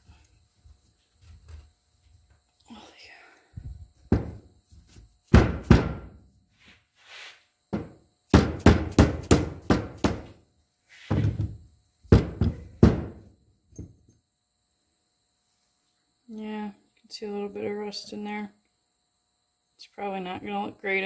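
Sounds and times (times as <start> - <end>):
hard knocks on metal: 4.1 - 4.4, 5.3 - 6.2, 7.8 - 10.4, 12.1 - 13.3.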